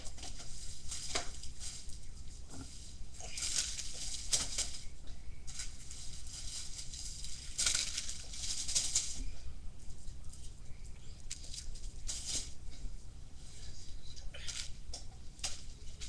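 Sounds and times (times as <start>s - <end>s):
plastic rustling and crinkling: 0.0s - 12.8s.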